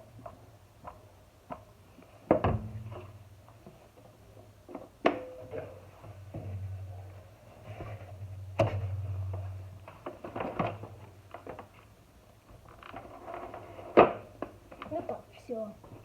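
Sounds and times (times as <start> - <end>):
low steady hum: 2.0 - 13.0
sharp knocks and clicks: 2.3 - 3.3, 5.1 - 11.6.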